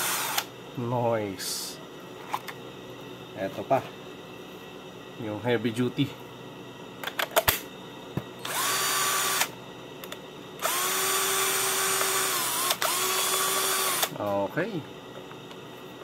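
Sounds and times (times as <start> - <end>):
cordless drill whining: 0.0 - 0.5, 8.4 - 9.5, 10.6 - 14.1.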